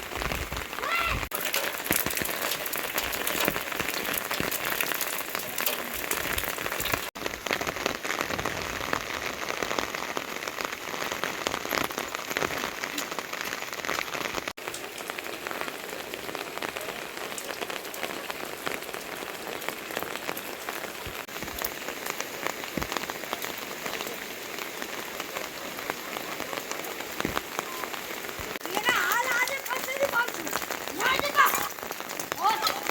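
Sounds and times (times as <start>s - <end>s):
steady rain falling: 0.0s - 32.9s.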